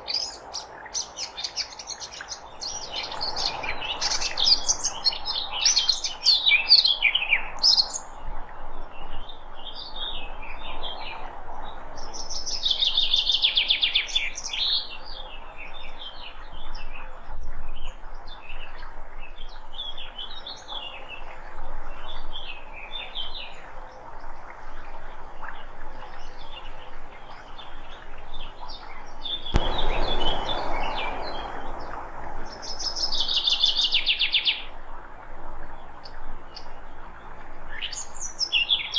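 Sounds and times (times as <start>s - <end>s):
birds chirping and singing: 0.0s - 8.0s, 29.2s - 34.7s
faint background hiss: 0.0s - 38.9s.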